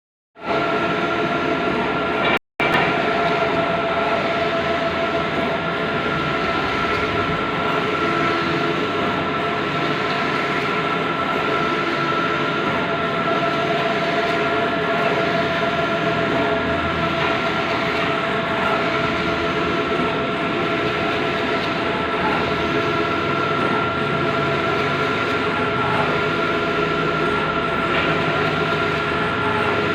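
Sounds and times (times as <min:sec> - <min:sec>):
printer mechanical drone: 0:00.4 - 0:29.9.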